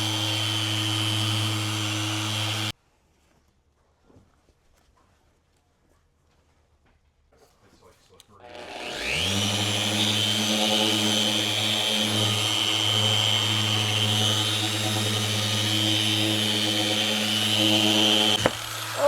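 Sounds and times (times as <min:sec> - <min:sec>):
power tool motor whining: 0:00.0 - 0:02.7, 0:08.4 - 0:19.0.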